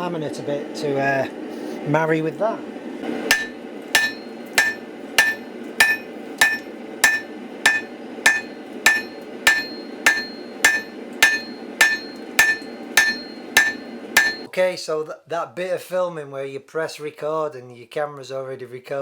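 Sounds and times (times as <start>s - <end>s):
hammer striking steel on anvil: 3.2s - 14.5s.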